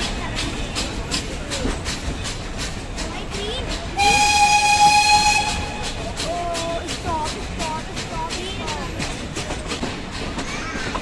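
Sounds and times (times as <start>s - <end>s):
train wheels clicking over rail joints: 0.0s - 11.0s
steam locomotive whistle: 4.0s - 6.0s.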